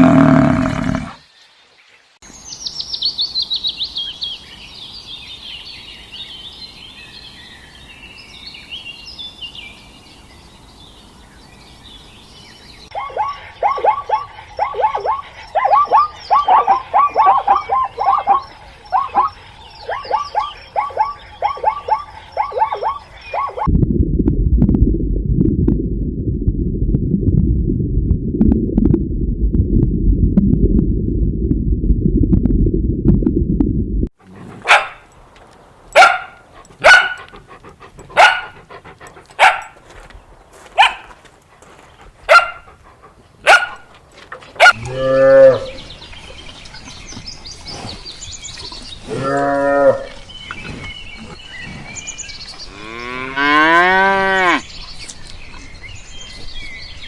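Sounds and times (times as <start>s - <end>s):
cattle mooing: 0.0s - 1.2s, 44.8s - 45.8s, 49.1s - 50.2s, 52.7s - 54.6s
low steady rumbling: 23.7s - 34.7s
dog barking: 34.5s - 35.1s, 35.9s - 37.3s, 38.1s - 38.6s, 39.4s - 39.8s, 40.8s - 41.1s, 42.3s - 42.7s, 43.4s - 43.9s, 44.6s - 44.8s.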